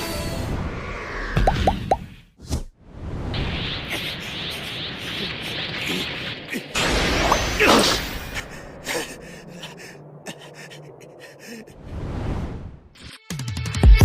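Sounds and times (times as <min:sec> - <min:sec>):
energy blast rushing burst: 0:03.2 - 0:09.2
scattered crackles: 0:03.4 - 0:11.7.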